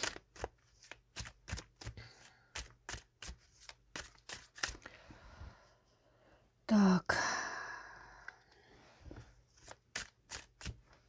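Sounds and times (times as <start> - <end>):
cards shuffled and flicked: 0.0 - 5.0, 9.2 - 11.0.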